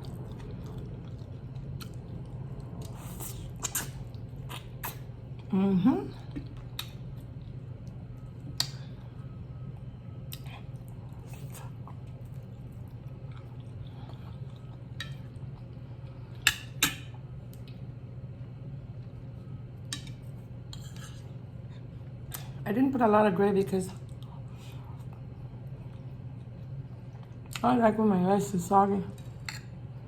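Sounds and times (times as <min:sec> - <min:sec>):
steady low hum: 0:00.0 - 0:30.0
wet mouth noises: 0:02.8 - 0:05.1.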